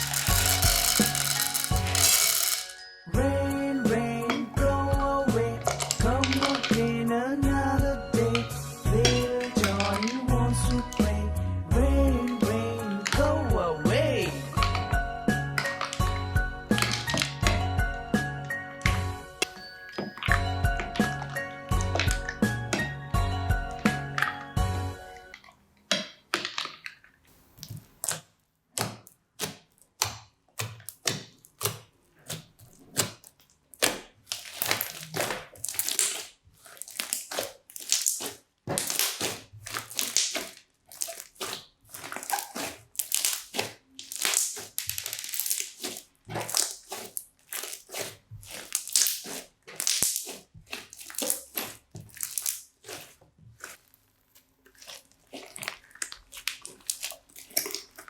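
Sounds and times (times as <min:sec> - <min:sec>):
crunchy slime squeezed by hand: 0:00.0 - 0:02.6, 0:27.9 - 0:58.0.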